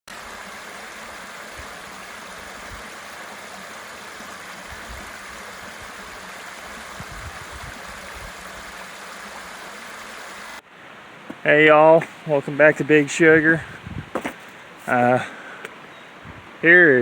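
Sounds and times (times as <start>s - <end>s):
water rushing over spillway: 0.1s - 10.6s
low bumps: 11.3s - 15.3s.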